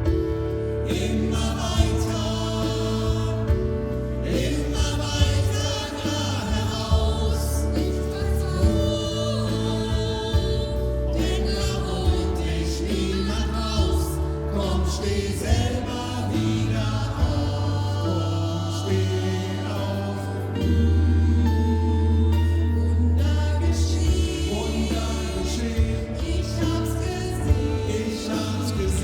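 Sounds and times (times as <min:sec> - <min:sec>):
choir singing in harmony: 0:00.0 - 0:29.0.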